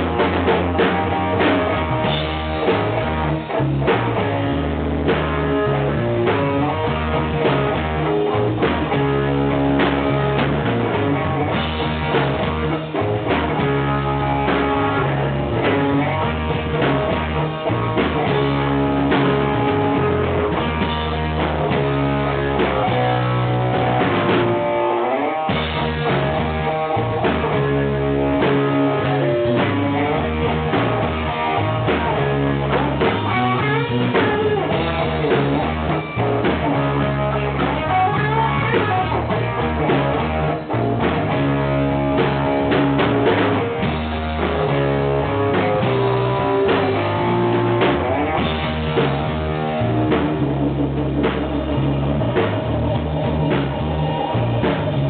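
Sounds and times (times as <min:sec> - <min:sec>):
bass guitar: 0:00.0 - 0:55.0
drum kit: 0:00.0 - 0:55.0
electric guitar: 0:00.0 - 0:55.0.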